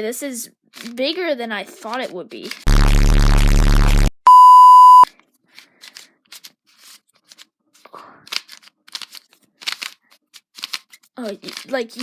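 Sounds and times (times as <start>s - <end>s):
loud censor beep: 4.3s - 5.0s.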